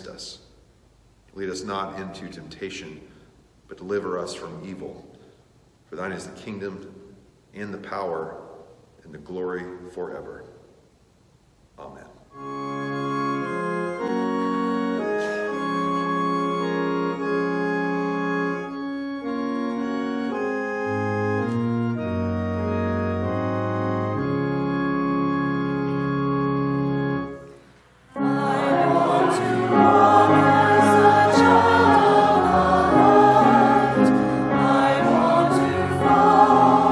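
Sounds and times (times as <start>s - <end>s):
organ playing slow held chords: 12.3s - 36.9s
choir singing: 28.1s - 36.9s.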